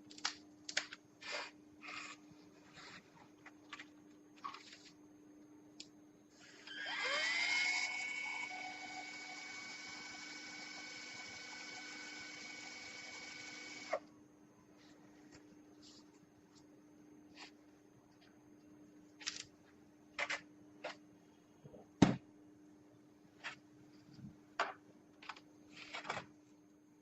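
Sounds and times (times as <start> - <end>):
surgical drill whining: 6.4 - 14.0.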